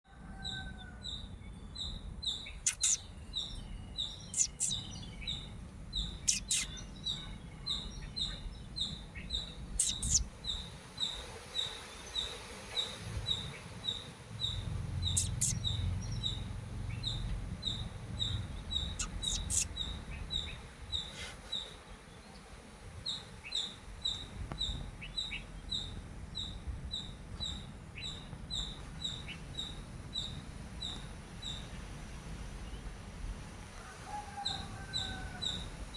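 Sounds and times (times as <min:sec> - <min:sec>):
high-pitched chirping: 0:02.7 - 0:03.0, 0:04.3 - 0:04.8, 0:06.2 - 0:06.7, 0:09.8 - 0:10.2, 0:15.1 - 0:15.7, 0:18.9 - 0:19.7
low background rumble: 0:14.3 - 0:20.7.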